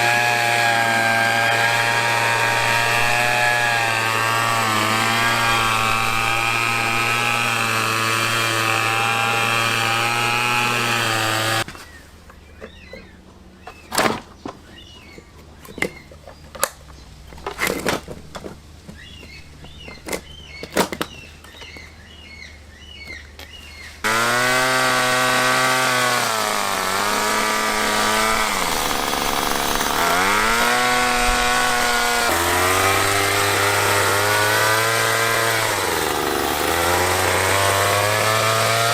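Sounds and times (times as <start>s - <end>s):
two-stroke engine running: 24.0s - 38.9s.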